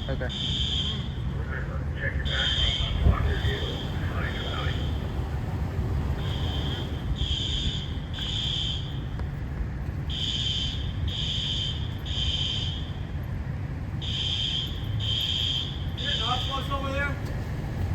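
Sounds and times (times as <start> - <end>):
fire alarm blasts: 0.0 - 1.4, 2.0 - 9.2, 10.0 - 13.3, 13.9 - 17.0
low rumble: 1.4 - 8.1.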